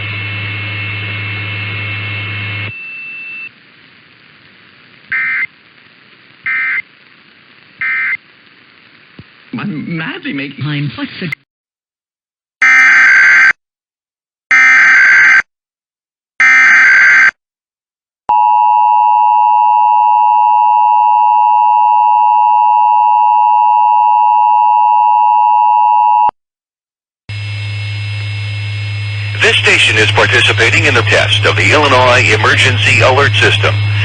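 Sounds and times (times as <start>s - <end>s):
low hum: 27.3s - 34.0s.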